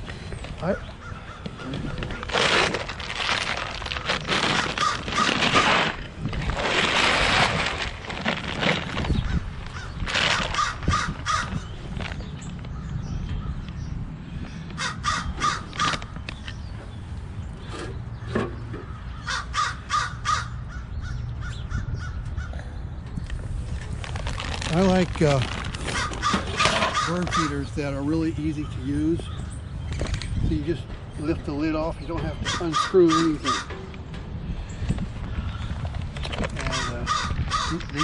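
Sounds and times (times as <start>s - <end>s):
bird calling: 0.0s - 6.0s, 8.2s - 22.8s, 25.8s - 38.0s
loud rustling handling noise: 1.8s - 12.7s, 23.4s - 28.2s, 35.6s - 38.0s.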